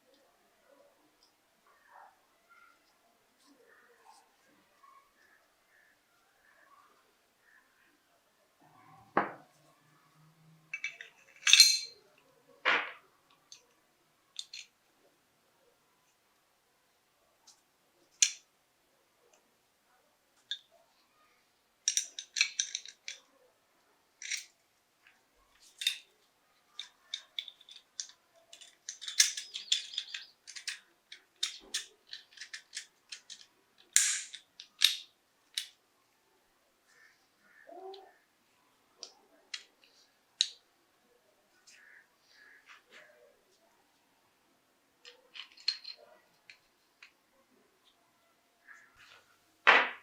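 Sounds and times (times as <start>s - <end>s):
metal parts clicking and scraping: 10.7s - 12.0s, 14.3s - 14.7s, 18.2s - 18.4s, 21.9s - 23.3s, 24.2s - 24.6s, 25.5s - 35.8s, 39.0s - 40.6s, 45.0s - 47.2s.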